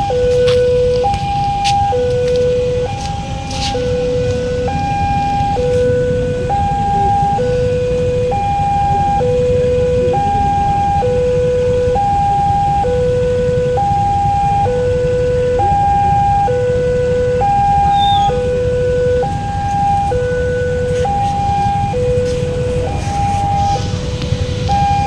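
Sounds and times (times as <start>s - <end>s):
two-tone crossing warning siren: 0.0s - 25.0s.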